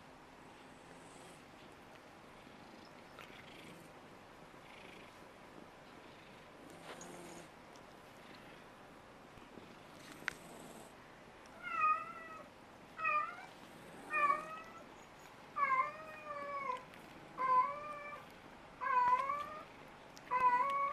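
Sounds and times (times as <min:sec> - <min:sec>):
cat meowing: 0:18.8 - 0:19.7, 0:20.3 - 0:20.9.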